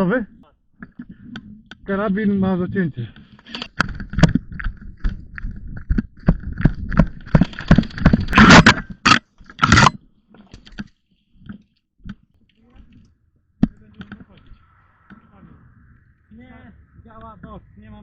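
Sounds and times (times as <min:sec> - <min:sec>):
rushes of noise: 0:13.8 - 0:18.0.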